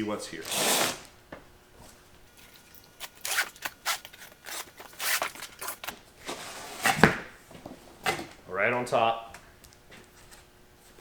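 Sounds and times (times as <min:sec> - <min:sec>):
cardboard box scraping and tearing: 0:00.4 - 0:01.0, 0:03.1 - 0:07.2.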